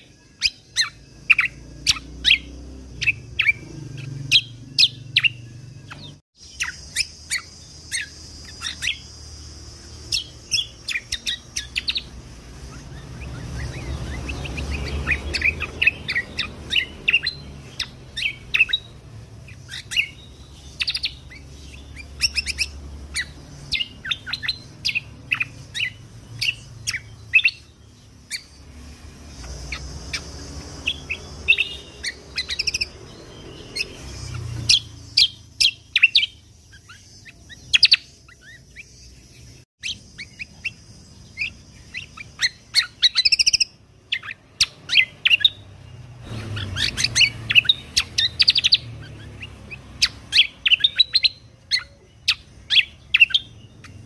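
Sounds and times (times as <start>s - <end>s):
songbird chirping and trilling: 0.0s - 54.0s.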